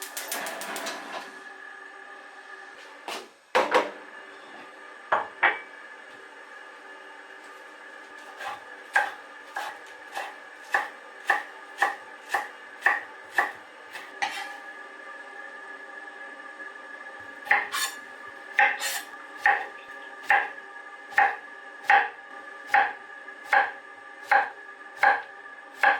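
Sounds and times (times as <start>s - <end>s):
knife chopping on cutting board: 8.3s - 14.6s, 17.5s - 18.0s, 18.6s - 19.7s, 20.3s - 20.5s, 22.7s - 22.9s, 24.3s - 25.2s.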